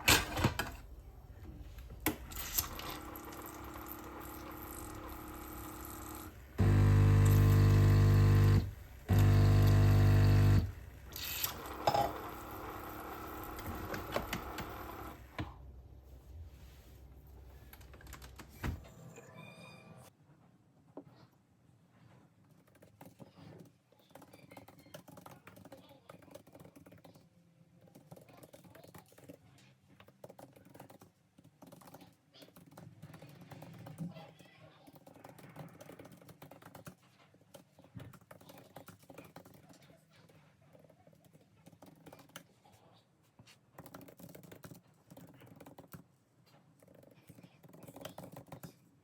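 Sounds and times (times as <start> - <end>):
coffee machine humming: 2.1 - 15.5.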